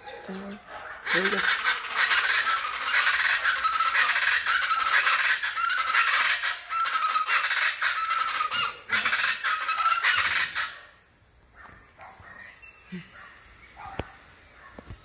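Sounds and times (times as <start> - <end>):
birds calling in raucous chorus: 0.0 - 15.0.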